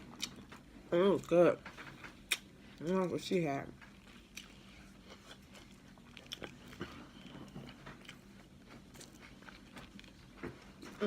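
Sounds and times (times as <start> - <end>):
person chewing with lip smacks: 3.8 - 11.0.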